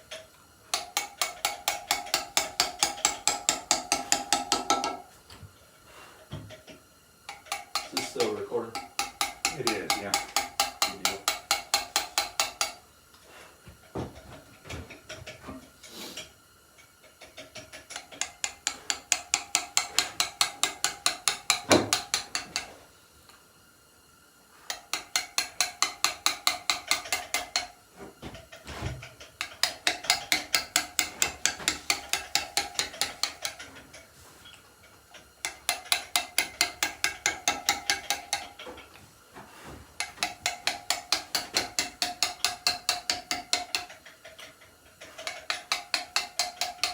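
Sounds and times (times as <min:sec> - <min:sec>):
chisel tapping into stone: 0:00.8 - 0:05.0, 0:07.3 - 0:12.8, 0:17.4 - 0:22.7, 0:24.7 - 0:27.7, 0:29.5 - 0:33.8, 0:35.5 - 0:38.6, 0:40.0 - 0:43.9, 0:45.2 - 0:46.9.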